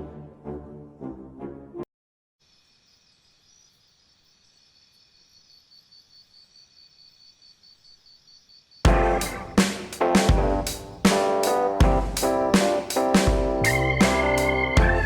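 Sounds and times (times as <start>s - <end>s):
music: 0.0s - 1.8s, 8.9s - 15.0s
insect chirping: 2.4s - 10.0s.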